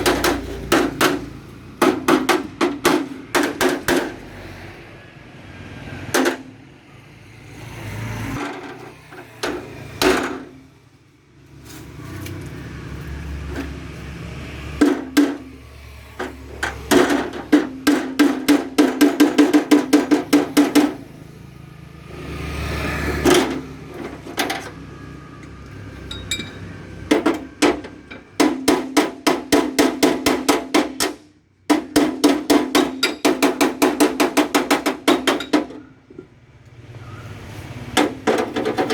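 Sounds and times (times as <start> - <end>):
hammer on sheet metal: 0.0 - 4.2, 6.1 - 6.6, 14.8 - 15.6, 16.2 - 21.1, 27.1 - 35.9.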